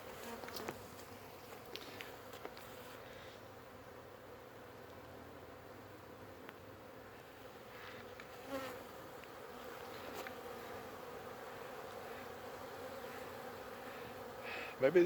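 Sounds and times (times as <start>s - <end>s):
bees buzzing: 0.0s - 15.0s.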